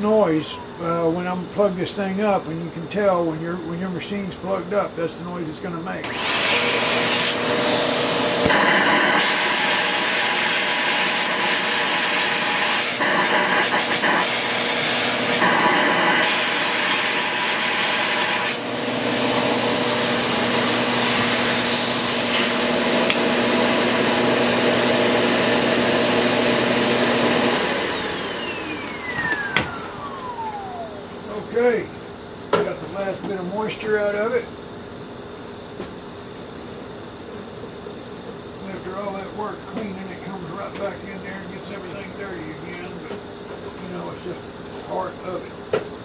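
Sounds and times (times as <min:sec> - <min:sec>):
vacuum cleaner motor running: 0:06.0 - 0:31.6
motor whine spinning down: 0:22.0 - 0:31.3.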